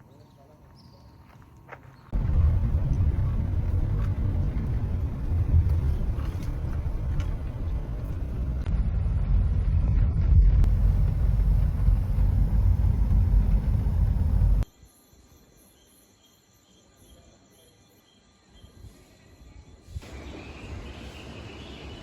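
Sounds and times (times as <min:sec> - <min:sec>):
wind buffeting microphone: 0:02.1 - 0:08.7, 0:10.6 - 0:14.6.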